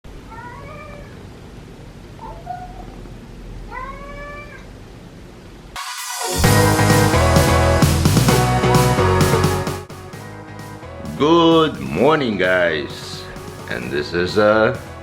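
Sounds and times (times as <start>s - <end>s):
cat meowing: 0.2s - 1.3s, 2.2s - 3.0s, 3.6s - 4.8s
loud rock music: 5.8s - 15.0s.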